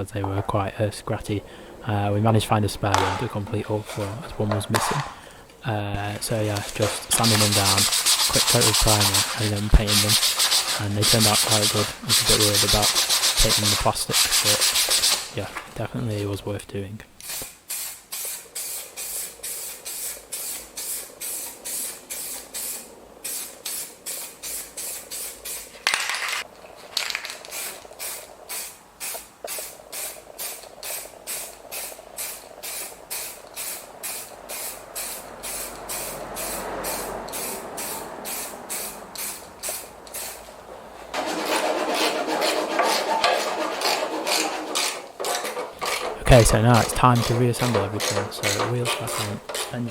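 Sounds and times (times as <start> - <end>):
spray paint can hissing: 2.9 - 5.3, 6.1 - 15.7, 17.2 - 26.5, 27.3 - 45.1.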